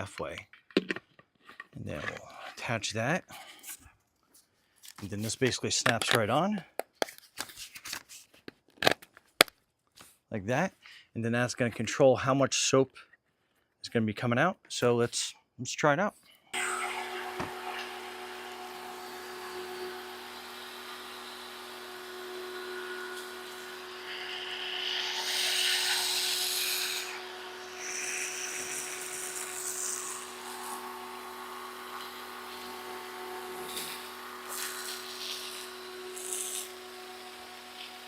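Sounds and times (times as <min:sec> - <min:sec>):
pressure washer motor hum: 0:16.6 - 0:38.0.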